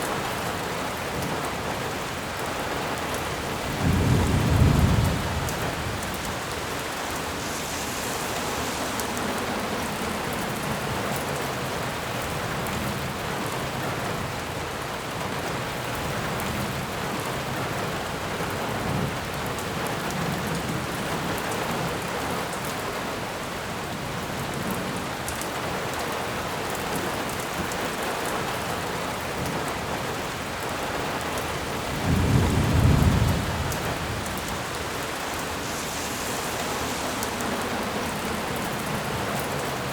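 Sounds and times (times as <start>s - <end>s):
thunder rumbling: 0.0s - 14.3s, 31.2s - 39.9s
steady rain: 0.0s - 39.9s.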